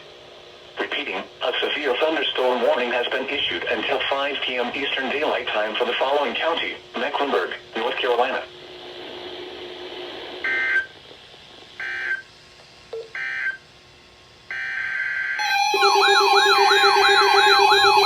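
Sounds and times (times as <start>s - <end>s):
siren-like warble: 14.9s - 18.0s
digital data tone bursts: 15.4s - 18.0s
steady tone: 15.4s - 18.0s.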